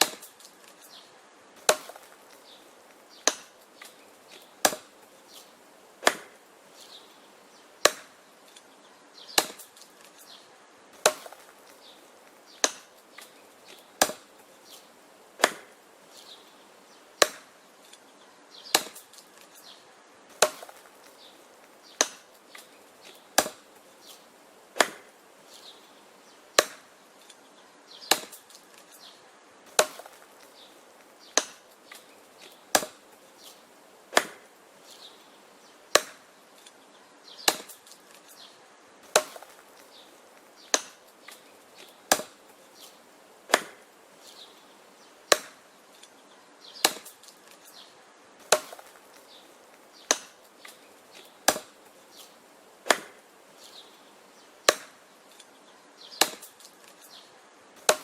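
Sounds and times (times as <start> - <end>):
wood chopping strikes: 0.0 - 0.9, 1.6 - 6.4, 7.8 - 8.7, 9.3 - 10.4, 11.0 - 16.3, 17.2 - 18.0, 18.7 - 25.2, 26.6 - 27.4, 28.0 - 34.5, 35.9 - 36.8, 37.4 - 44.4, 45.3 - 46.2, 46.8 - 47.8, 48.4 - 53.8, 54.6 - 55.5, 56.1 - 57.2, 57.8 - 58.0.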